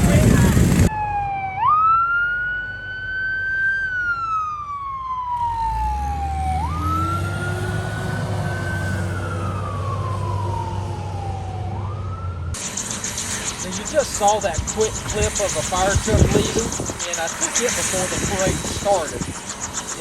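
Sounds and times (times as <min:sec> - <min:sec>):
low engine rumble: 0:00.0 - 0:00.9
fire truck siren wailing: 0:00.0 - 0:20.0.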